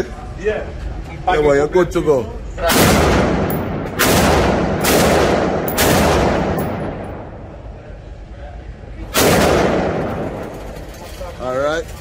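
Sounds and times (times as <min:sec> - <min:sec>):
handgun shots echoing: 0:02.7 - 0:07.3.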